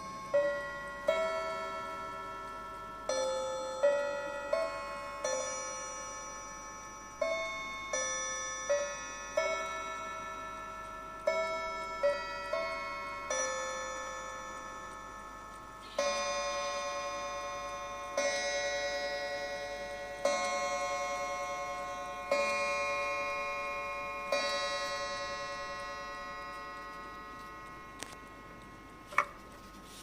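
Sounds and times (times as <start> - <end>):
clock chime melody on gongs: 0.0 - 29.1
deep clock hour strikes: 0.0 - 29.1.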